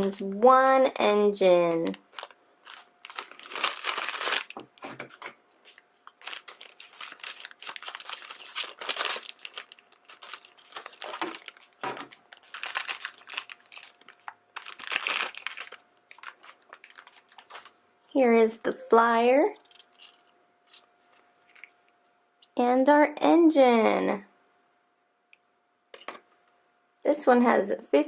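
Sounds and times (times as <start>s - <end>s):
plastic packet crinkling: 1.5s - 17.8s, 19.4s - 22.6s.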